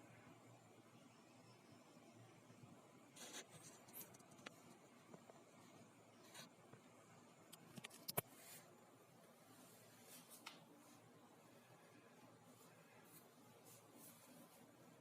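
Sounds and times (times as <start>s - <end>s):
faint scratchy rustles: 9.4s - 15.0s.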